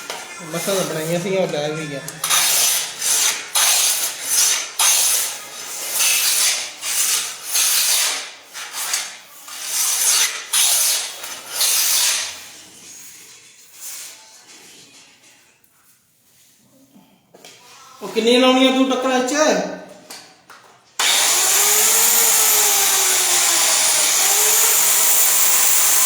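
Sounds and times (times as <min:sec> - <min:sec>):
wood rasping strokes: 0:21.0 - 0:26.0.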